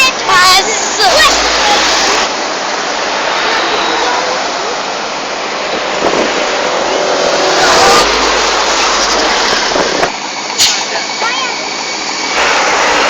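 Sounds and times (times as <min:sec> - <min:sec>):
vehicles passing close by: 0:00.0 - 0:13.0.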